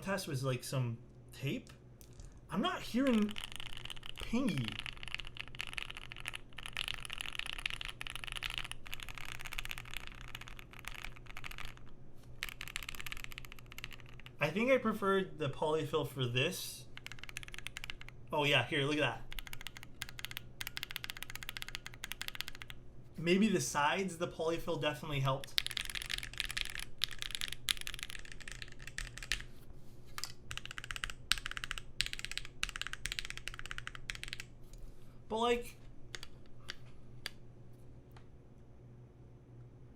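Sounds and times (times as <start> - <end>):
fast mechanical keyboard typing: 2.5 - 14.6, 16.9 - 22.8, 25.2 - 29.5, 30.2 - 34.5, 36.1 - 36.4.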